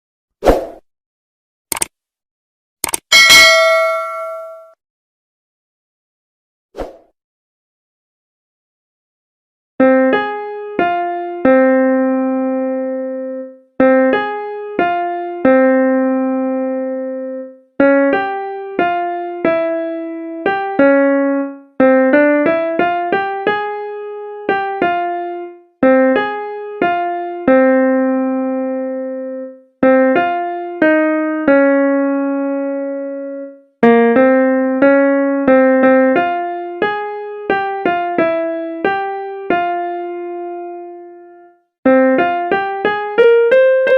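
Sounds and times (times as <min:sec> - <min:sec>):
slow piano-like melody: 0:09.8 - 0:43.9.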